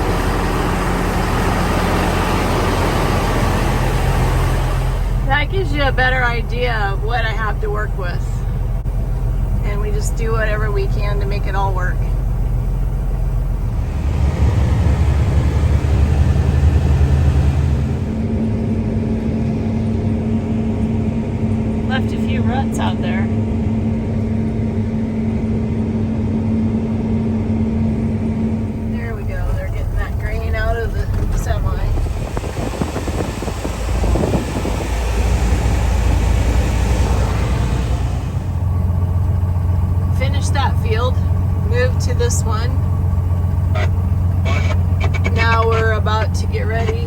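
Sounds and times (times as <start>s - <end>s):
heavy vehicle engine rumbling: 0.0s - 47.0s
steady hum: 0.0s - 47.0s
rattles and knocks: 43.6s - 47.0s.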